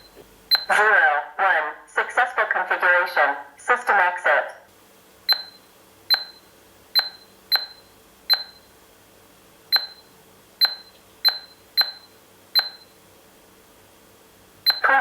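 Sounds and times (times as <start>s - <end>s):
keypad beeps: 0.0s - 0.8s, 5.3s - 8.7s, 9.7s - 13.0s, 14.6s - 15.0s.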